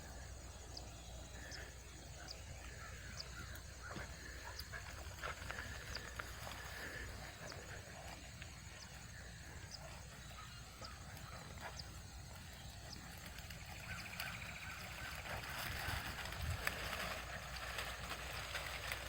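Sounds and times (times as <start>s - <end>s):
wind rumble on microphone: 12.8s - 19.0s.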